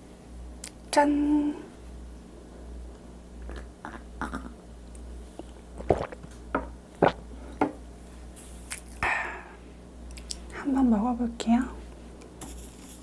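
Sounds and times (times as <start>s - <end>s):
person swallowing gulps: 3.5s - 4.6s, 5.4s - 6.4s, 7.0s - 7.3s.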